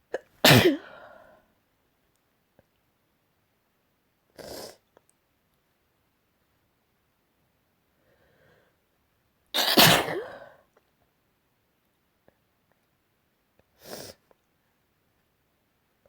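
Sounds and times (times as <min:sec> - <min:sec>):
person sneezing: 0:00.2 - 0:01.2, 0:09.6 - 0:10.6.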